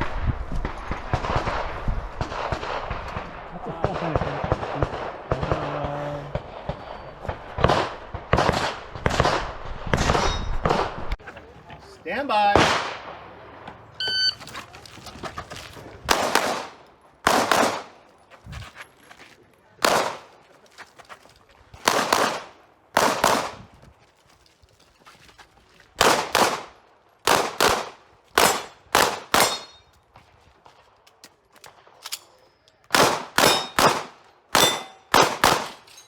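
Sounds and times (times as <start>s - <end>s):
pistol shots in quick pairs: 3.9s - 11.0s, 12.5s - 13.2s, 16.1s - 18.0s, 19.8s - 20.3s, 21.8s - 23.6s, 26.0s - 29.8s, 32.9s - 35.9s.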